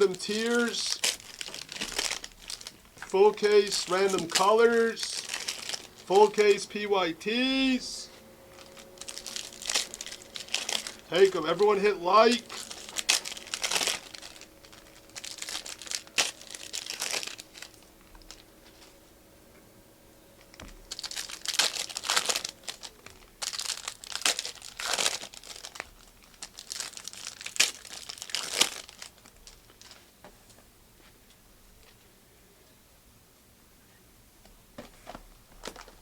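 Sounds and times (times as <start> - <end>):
packaging crinkling and tearing: 0.0 - 6.8, 8.4 - 18.9, 20.5 - 30.0, 35.5 - 36.0.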